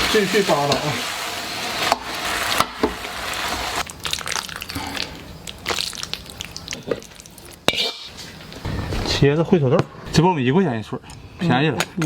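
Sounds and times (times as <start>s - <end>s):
food sizzling and bubbling in a wok: 0.0s - 8.8s.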